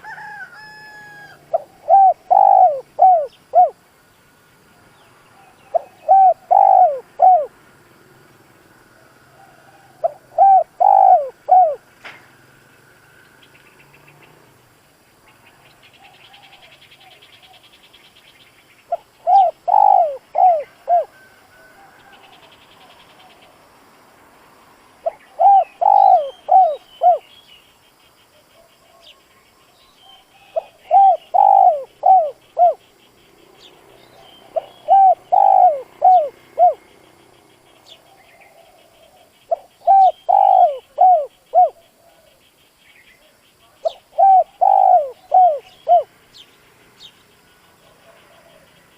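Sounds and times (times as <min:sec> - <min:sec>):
dove cooing: 0:00.0 - 0:03.8, 0:05.4 - 0:07.6, 0:09.0 - 0:11.9, 0:18.9 - 0:22.5, 0:25.0 - 0:27.3, 0:30.1 - 0:32.9, 0:34.4 - 0:36.9, 0:37.9 - 0:42.4, 0:43.8 - 0:46.1, 0:47.8 - 0:48.9.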